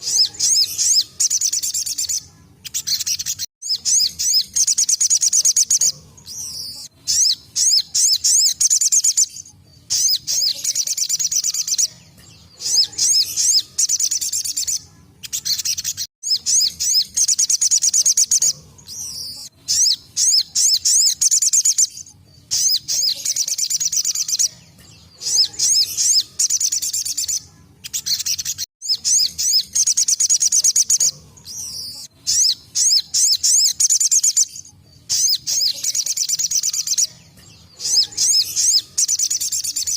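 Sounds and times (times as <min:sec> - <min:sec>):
bird singing fast trilled bursts: 0:25.2 - 0:37.1.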